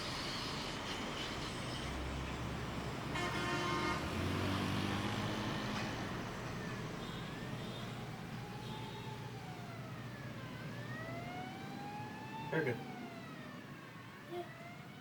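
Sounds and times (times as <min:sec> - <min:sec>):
road traffic: 0:00.0 - 0:15.0
car horn honking: 0:03.1 - 0:04.0.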